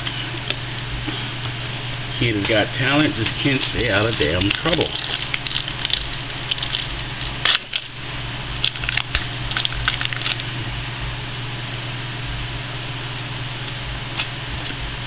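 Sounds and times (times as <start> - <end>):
steady low hum: 0.0 - 15.0
trading cards clicking and rustling: 3.2 - 7.9.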